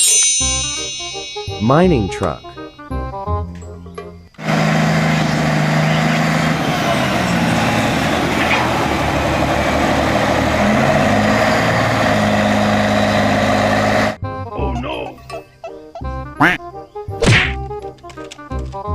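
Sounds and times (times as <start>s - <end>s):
heavy diesel truck engine droning: 4.3s - 14.3s.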